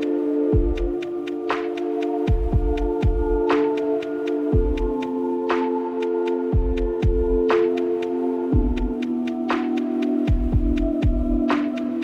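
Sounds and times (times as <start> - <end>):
ticking hi-hats: 0.0 - 12.0
deep kick drums: 2.3 - 3.5, 6.6 - 7.4, 10.3 - 11.4.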